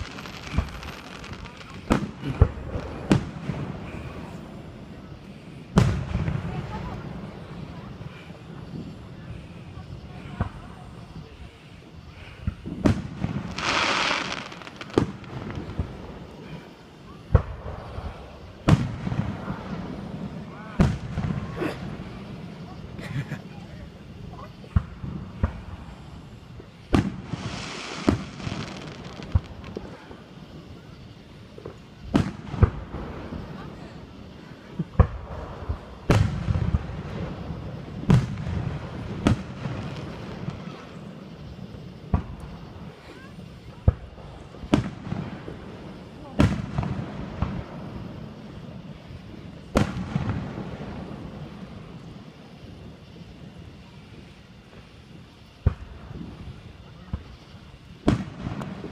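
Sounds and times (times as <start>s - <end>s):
firework pops: 0.0s - 3.7s, 26.8s - 30.0s, 34.8s - 36.9s, 55.6s - 56.4s, 57.0s - 58.9s
fireworks shells bursting: 0.0s - 3.9s, 12.4s - 16.8s
fireworks hiss: 0.0s - 58.9s.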